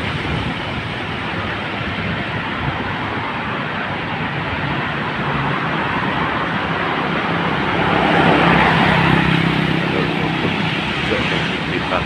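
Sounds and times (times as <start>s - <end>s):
road traffic: 0.0s - 12.0s
wind rush: 0.0s - 12.0s
vehicle engine running: 4.7s - 12.0s.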